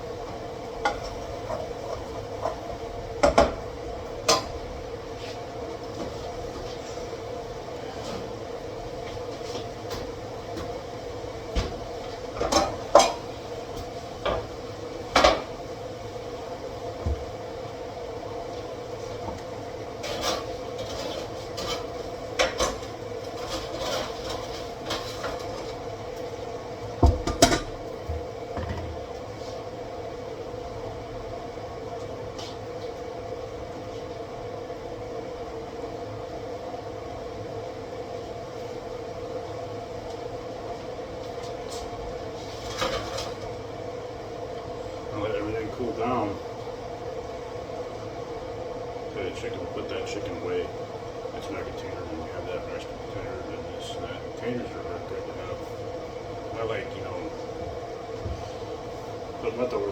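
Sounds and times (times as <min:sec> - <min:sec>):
steady hum: 0:00.0 - 0:59.9
pots and pans clanking: 0:11.6 - 0:13.4, 0:14.2 - 0:15.6, 0:20.0 - 0:25.8, 0:27.0 - 0:29.0.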